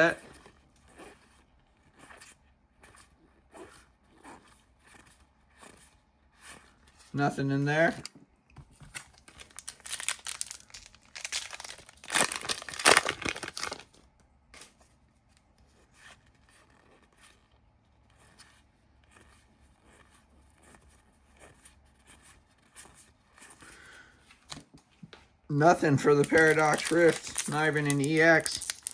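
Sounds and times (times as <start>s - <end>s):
cards clicking and rustling: 7.9s - 14.0s, 25.8s - 28.9s
foil wrapper tearing and crinkling: 8.9s - 14.0s, 26.0s - 28.9s.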